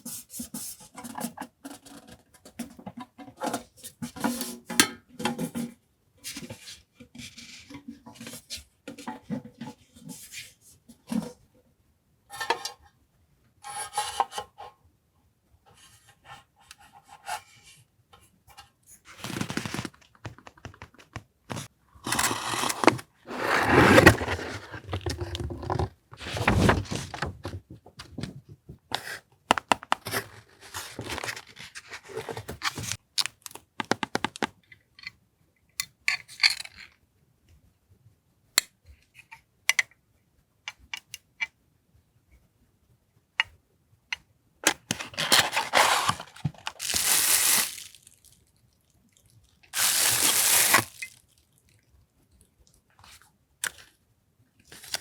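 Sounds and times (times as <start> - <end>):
packaging rustling and crinkling: 19.1 - 27.5, 44.7 - 48.4, 49.8 - 51.4, 54.7 - 55.0.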